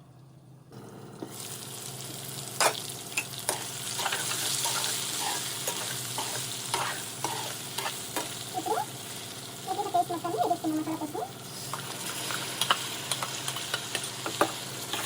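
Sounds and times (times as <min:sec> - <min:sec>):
vegetables sizzling in hot oil: 0:00.8 - 0:15.0
spatula scraping a pan: 0:02.6 - 0:08.4, 0:11.6 - 0:15.0.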